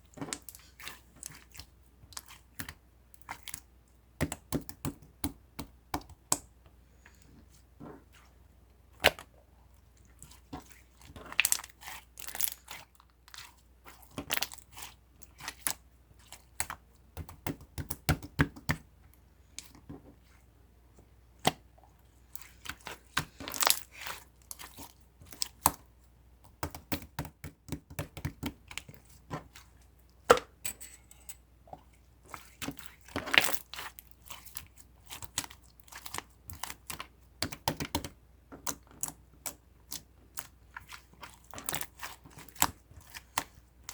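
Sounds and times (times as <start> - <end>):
slime squishing and popping: 22.7 - 25.8.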